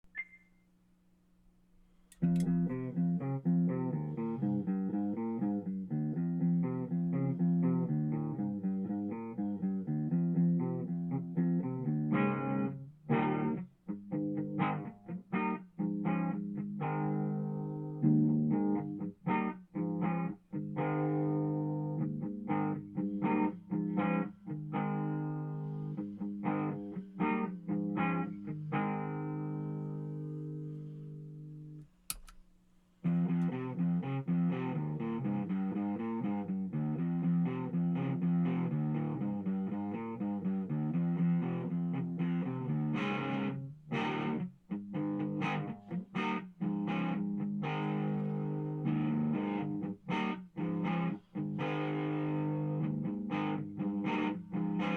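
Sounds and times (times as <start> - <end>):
click: 2.0 - 2.8, 31.8 - 32.6
electric guitar through effects pedal: 2.2 - 32.4, 33.0 - 54.9.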